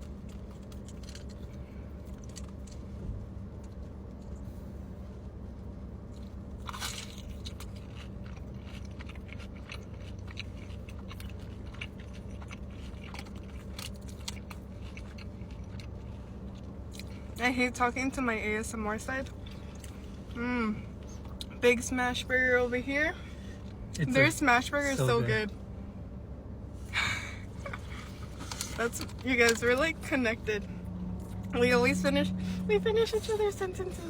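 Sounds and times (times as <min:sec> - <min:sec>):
crunchy chewing: 0:00.0 - 0:04.6, 0:06.0 - 0:17.4.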